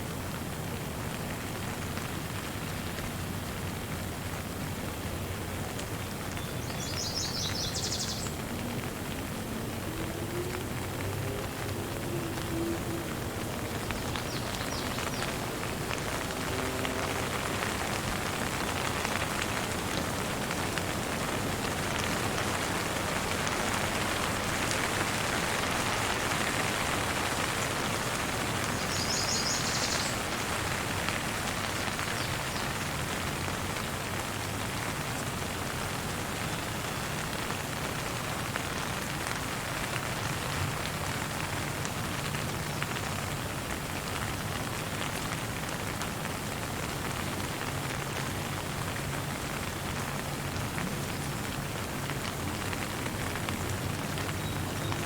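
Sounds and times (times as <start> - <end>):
gentle rain falling: 0.0 - 55.0.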